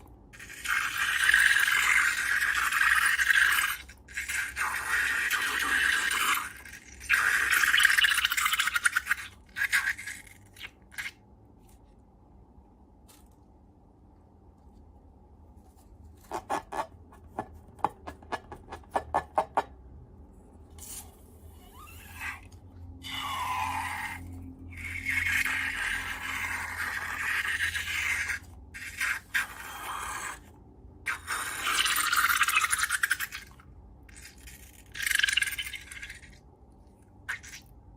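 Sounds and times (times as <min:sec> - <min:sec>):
slime being scraped: 0:15.6 - 0:19.5, 0:20.7 - 0:30.5.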